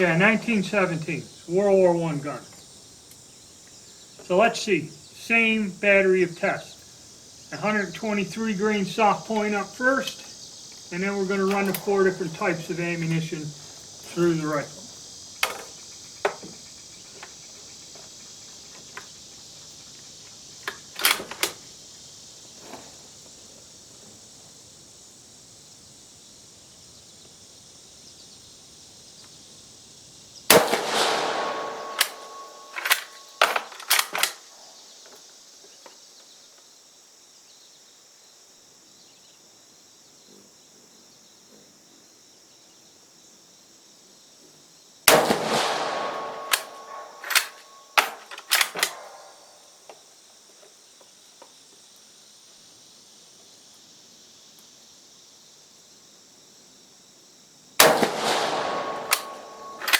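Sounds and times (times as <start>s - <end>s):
high insect buzz: 0.0s - 59.9s
rifle shots echoing: 11.0s - 14.7s, 30.5s - 34.3s, 45.1s - 49.4s, 57.8s - 59.9s
rifle bolt clicks and clacks: 31.8s - 34.4s, 46.4s - 49.1s.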